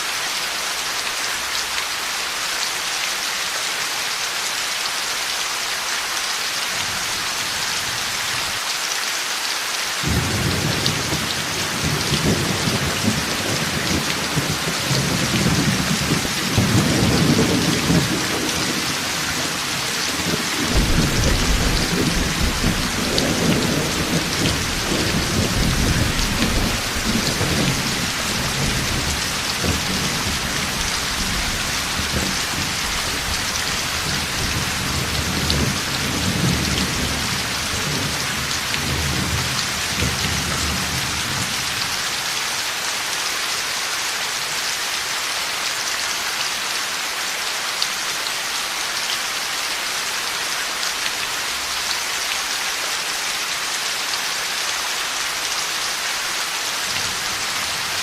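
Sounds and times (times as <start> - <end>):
heavy rain falling: 0.0 - 58.0
rolling thunder: 20.3 - 33.3.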